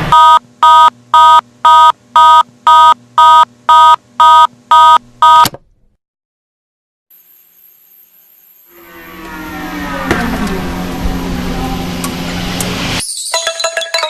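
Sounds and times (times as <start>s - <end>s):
loud electronic beeping: 0.1s - 5.5s.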